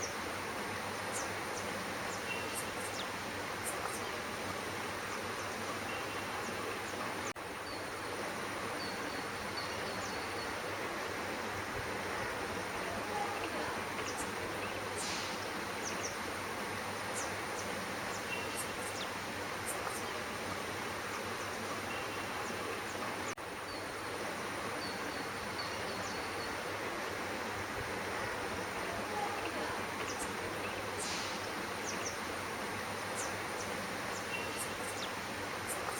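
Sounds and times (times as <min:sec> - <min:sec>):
steady outdoor hiss: 0:00.0 - 0:35.9.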